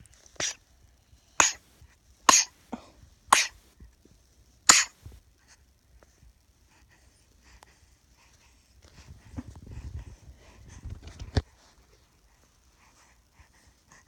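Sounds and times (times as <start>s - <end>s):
baby coughing: 1.4s - 1.6s, 2.3s - 3.6s, 4.7s - 5.0s.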